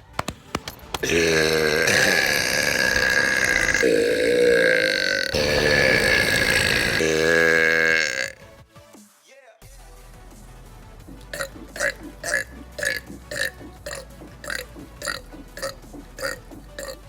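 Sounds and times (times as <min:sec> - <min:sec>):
person burping: 0:01.0 - 0:08.5, 0:11.3 - 0:17.0.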